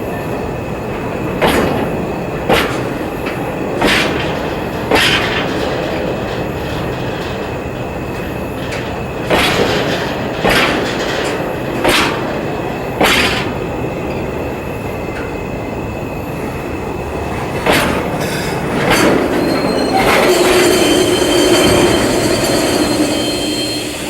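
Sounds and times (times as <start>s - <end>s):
train wheels clacking over rail joints: 0.1s - 24.0s
train wheel squeal: 12.3s - 24.0s.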